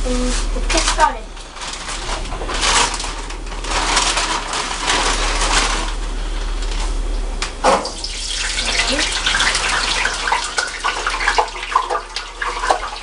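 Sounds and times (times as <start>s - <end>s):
food rustling and crunching: 0.1s - 7.4s.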